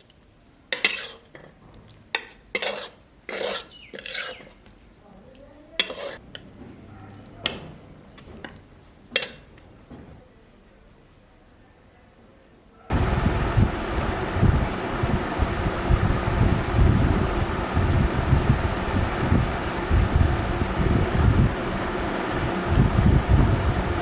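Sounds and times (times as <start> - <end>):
spatula scraping pan: 0.8 - 1.5, 2.2 - 4.6, 5.8 - 6.2.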